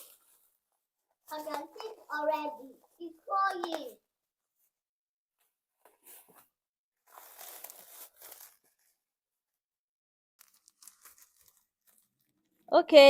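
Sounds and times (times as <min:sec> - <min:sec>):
plastic wrapping tearing: 0:07.1 - 0:08.8, 0:10.4 - 0:12.5.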